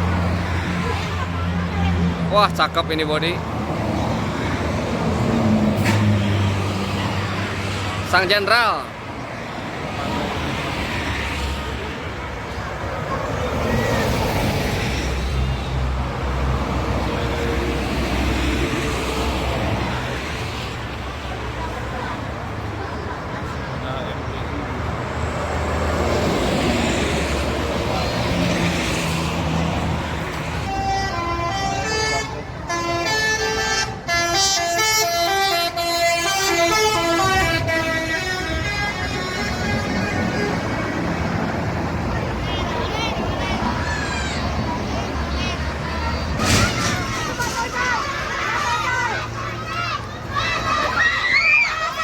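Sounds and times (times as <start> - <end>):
heavy traffic rumbling past: 0.0 - 52.0
musical air horn playing a tune: 30.6 - 41.0.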